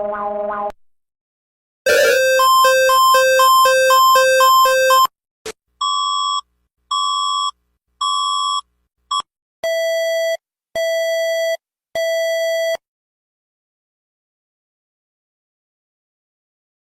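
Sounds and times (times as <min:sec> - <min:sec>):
high electronic beeps: 0:01.9 - 0:05.1
lower electronic beeps: 0:01.9 - 0:05.1.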